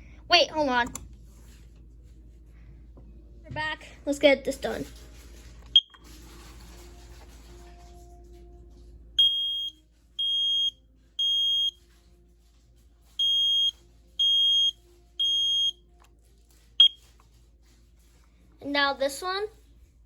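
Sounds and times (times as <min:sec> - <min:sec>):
smoke alarm beeps: 0:05.8 - 0:06.0, 0:09.2 - 0:11.8, 0:13.2 - 0:15.8, 0:16.8 - 0:17.0
smoke alarm chirp: 0:09.2 - 0:11.8, 0:13.2 - 0:15.8, 0:16.8 - 0:17.0.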